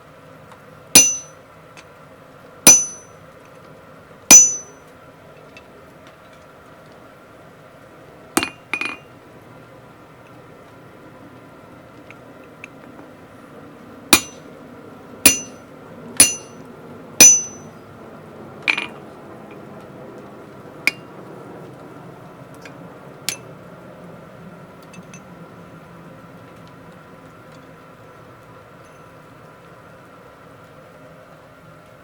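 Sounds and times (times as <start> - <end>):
steady low hum: 0.0 - 32.0
hammer striking punch on anvil: 1.0 - 1.4, 2.7 - 3.1, 4.3 - 4.8, 8.4 - 9.0, 14.2 - 14.4, 15.3 - 15.6, 16.2 - 16.6, 17.2 - 17.7.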